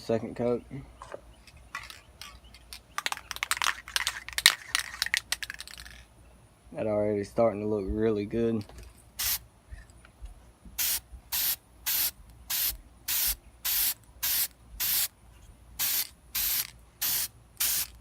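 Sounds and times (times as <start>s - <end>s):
spray paint hissing: 9.2s - 9.4s, 10.8s - 15.1s, 15.8s - 18.0s.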